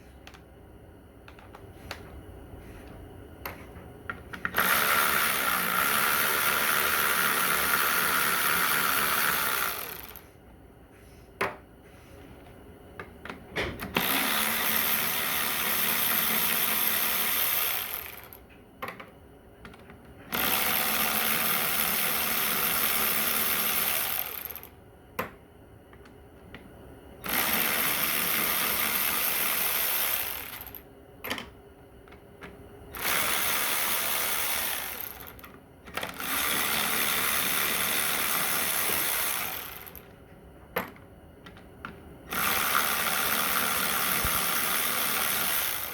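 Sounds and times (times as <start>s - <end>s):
power tool spinning out bolts: 4.4s - 10.2s, 13.9s - 18.4s, 33.0s - 40.1s, 42.3s - 45.9s.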